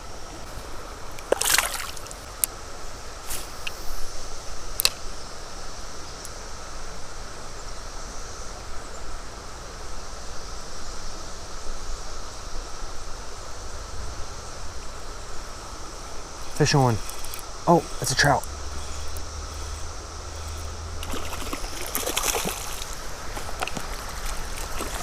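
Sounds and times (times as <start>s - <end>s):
moving water: 0.0s - 2.5s, 15.2s - 25.0s
insects droning: 0.0s - 25.0s
wind: 0.0s - 25.0s.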